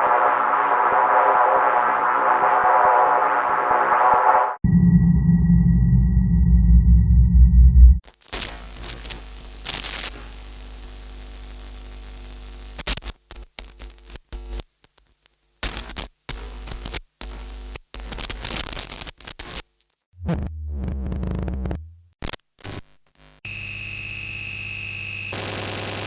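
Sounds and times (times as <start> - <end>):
low hum: 4.6 - 8.0
electronic static hiss: 8.3 - 23.4.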